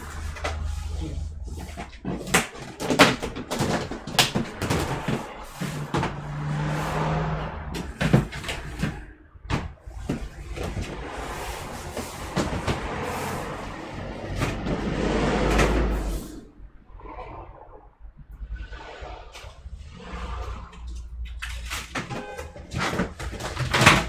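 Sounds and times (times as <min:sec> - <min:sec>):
parts and containers clattering: 0:00.0 - 0:07.0, 0:07.7 - 0:16.3, 0:19.3 - 0:24.0
scraping and rustling: 0:00.0 - 0:16.5.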